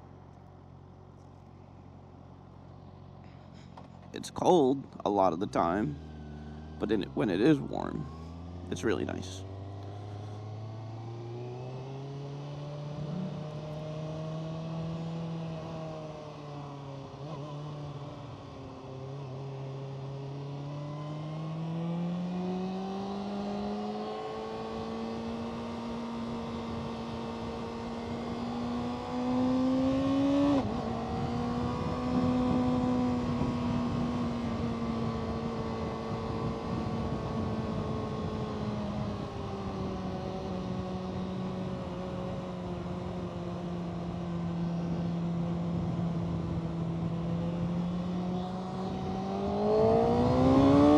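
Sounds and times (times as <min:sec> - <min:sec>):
motorcycle engine running: 0:11.9 - 0:16.0.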